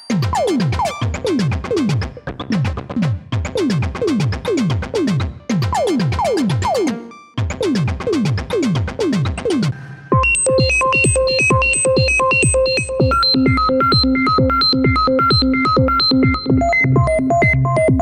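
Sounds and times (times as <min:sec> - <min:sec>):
synthesizer zapping notes: 0:10.1 - 0:17.3.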